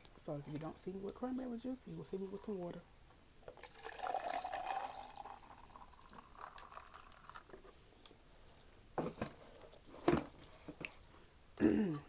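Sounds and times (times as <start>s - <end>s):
drink pouring into a cup: 3.5s - 8.2s.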